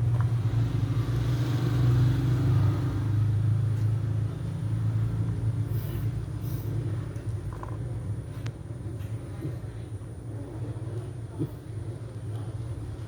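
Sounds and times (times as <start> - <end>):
motor engine rumbling: 0.0 - 2.0.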